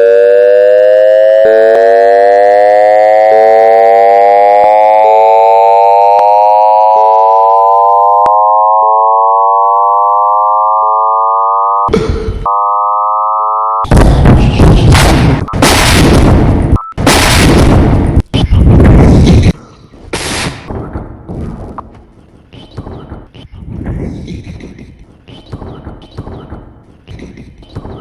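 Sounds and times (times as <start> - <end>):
siren wailing: 0.0 - 13.9.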